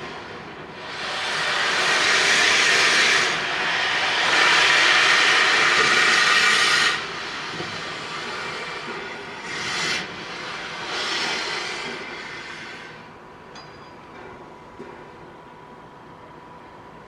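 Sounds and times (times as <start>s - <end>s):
steam locomotive hissing steam: 0.0s - 13.4s.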